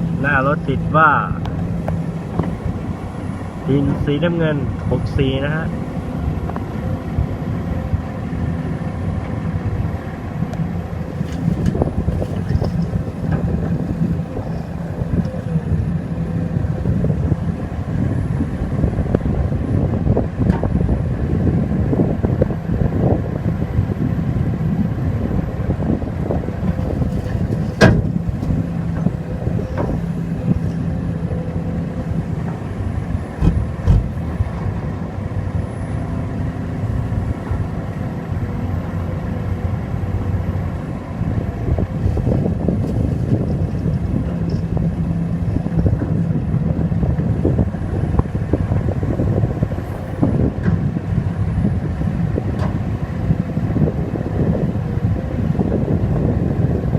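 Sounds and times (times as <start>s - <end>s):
diesel engines running: 0.0s - 56.9s
knocks: 33.4s - 34.3s.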